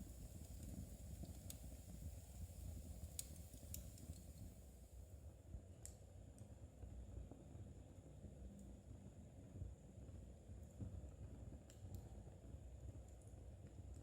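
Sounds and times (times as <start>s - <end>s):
low steady rumble: 0.0s - 5.7s.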